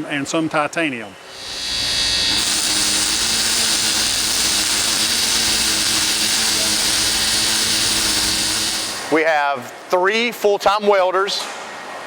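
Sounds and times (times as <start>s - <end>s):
arc welding hiss: 1.3s - 9.3s.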